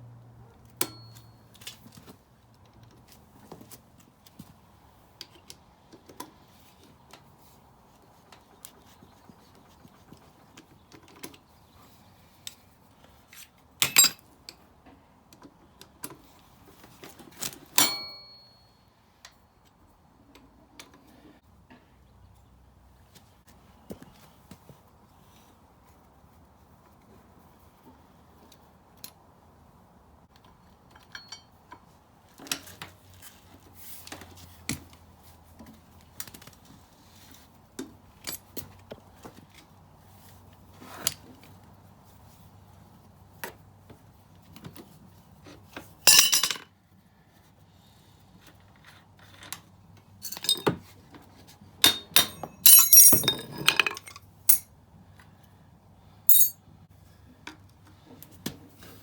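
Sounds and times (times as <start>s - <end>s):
tools and metal parts clinking: 0.8s - 1.8s, 13.8s - 14.3s, 17.8s - 18.4s, 46.1s - 46.6s, 50.2s - 50.9s, 51.8s - 54.7s, 56.3s - 56.6s.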